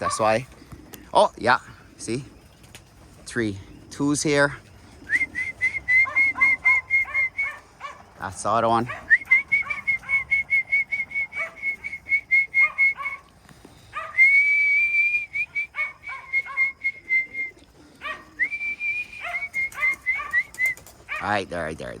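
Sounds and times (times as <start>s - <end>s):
person whistling short notes: 5.1s - 7.6s, 9.1s - 13.2s, 14.2s - 17.6s, 18.4s - 20.8s.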